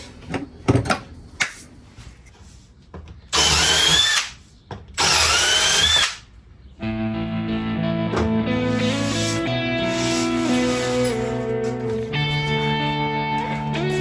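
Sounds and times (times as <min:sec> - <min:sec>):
power drill whining: 0:03.3 - 0:04.4, 0:05.0 - 0:06.2, 0:08.7 - 0:11.8.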